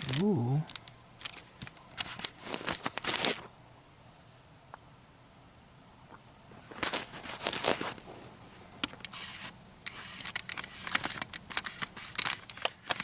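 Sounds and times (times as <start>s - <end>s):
food packaging rustling: 0.0s - 3.5s, 6.7s - 8.3s.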